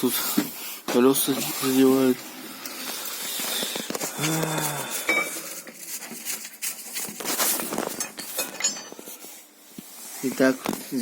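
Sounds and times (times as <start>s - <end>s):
metal parts clinking: 8.0s - 9.0s.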